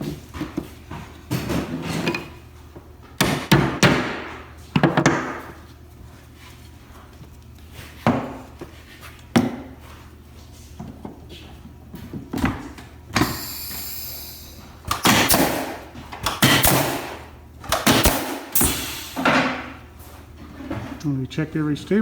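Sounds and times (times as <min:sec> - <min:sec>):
air stapler hissing bursts: 0:13.2 - 0:19.6.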